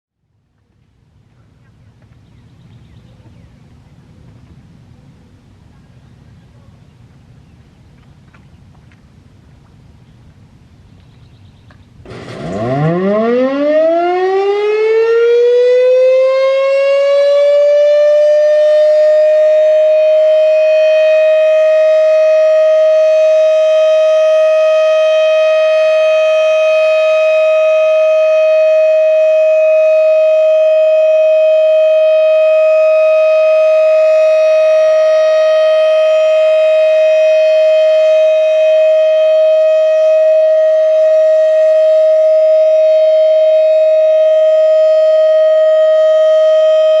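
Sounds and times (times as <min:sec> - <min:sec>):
electromechanical siren winding up: 0:12.1 - 0:13.7.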